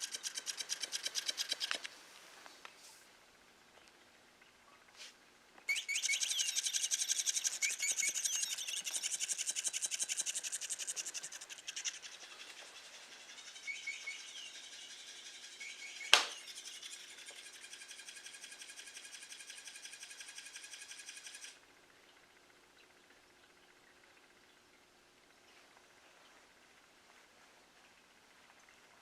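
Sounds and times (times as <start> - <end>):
bird chirps: 5.7 - 21.5
sharp click: 16.0 - 16.4.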